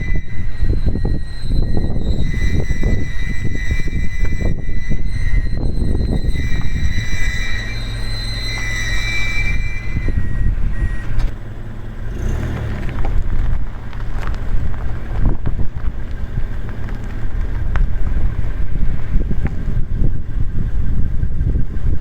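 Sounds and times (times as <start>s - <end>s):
disc brake squeal: 0.0s - 11.6s
van road rumble: 0.0s - 22.0s.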